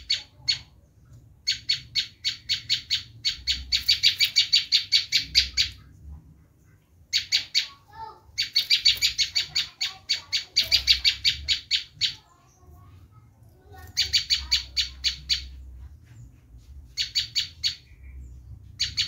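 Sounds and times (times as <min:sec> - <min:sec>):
bird giving sharp high chirps: 0:01.4 - 0:05.9, 0:07.1 - 0:12.5, 0:13.6 - 0:15.7, 0:16.9 - 0:19.0.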